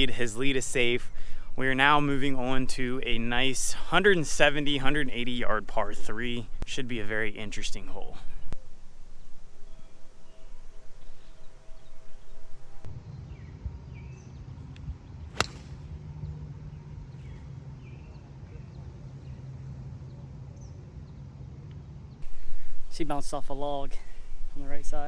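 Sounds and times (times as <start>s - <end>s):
birds chirping: 0.0s - 14.5s
low outdoor hum: 0.0s - 25.0s
golf club striking ball: 15.3s - 15.9s.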